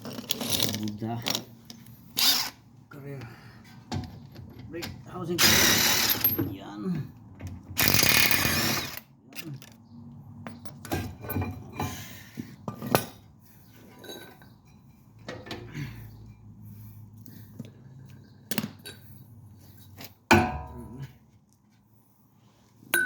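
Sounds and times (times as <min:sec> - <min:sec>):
metal parts clinking: 0:00.0 - 0:02.5, 0:05.4 - 0:06.5
metal strike ringing: 0:20.3 - 0:21.0.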